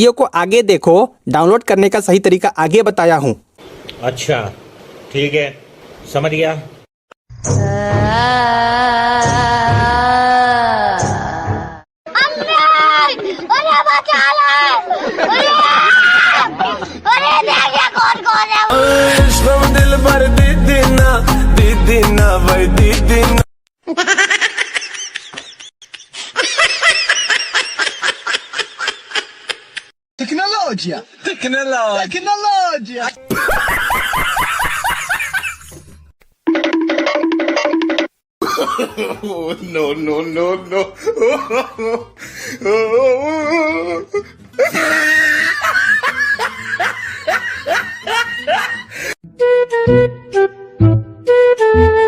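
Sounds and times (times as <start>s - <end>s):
person snickering and laughing: 23.8s - 29.9s, 38.4s - 39.5s, 40.7s - 49.0s.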